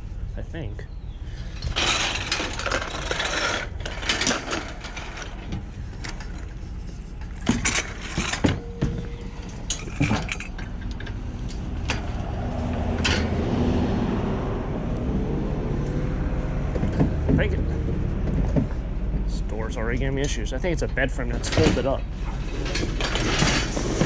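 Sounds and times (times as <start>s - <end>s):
knocks and clinks of bed frame: 1.6s - 12.1s, 13.0s - 13.4s, 21.4s - 24.0s
vehicle idling: 8.6s - 23.0s.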